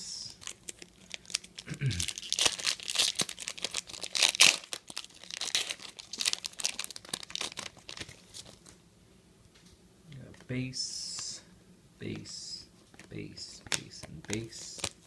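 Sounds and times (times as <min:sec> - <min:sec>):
wrapper tearing and crinkling: 0:00.3 - 0:08.7, 0:13.7 - 0:15.0.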